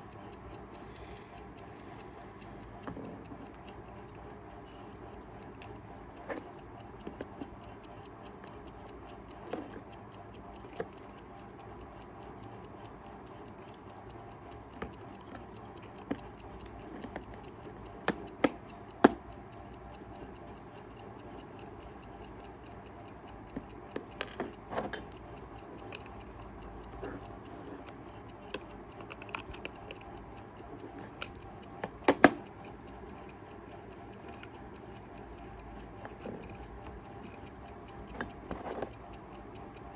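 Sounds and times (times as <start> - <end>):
alarm clock ticking: 0.0 - 39.9.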